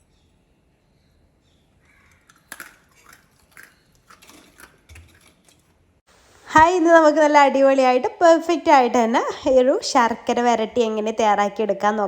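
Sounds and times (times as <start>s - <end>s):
person chewing crunchy snack: 1.9s - 5.7s.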